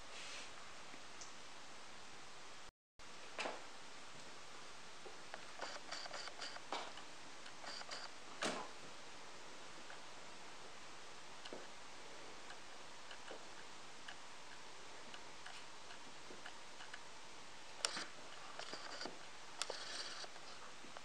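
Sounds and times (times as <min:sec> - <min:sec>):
scratchy clicks and rustles: 0:05.3 - 0:08.6, 0:12.4 - 0:17.1, 0:17.8 - 0:21.0
light ticks and clicks: 0:12.4 - 0:17.0.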